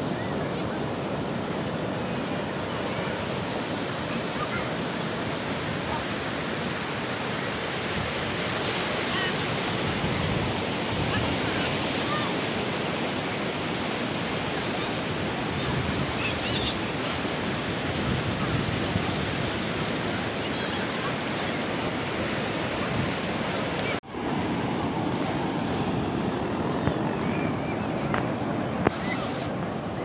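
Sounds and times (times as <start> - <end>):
sea waves washing on beach: 0.0 - 27.2
wind on microphone: 7.6 - 24.0.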